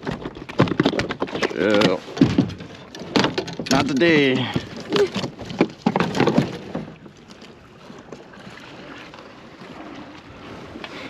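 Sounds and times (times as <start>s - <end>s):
knocks against kayak: 0.1s - 4.7s
wind and water hiss: 6.7s - 11.0s.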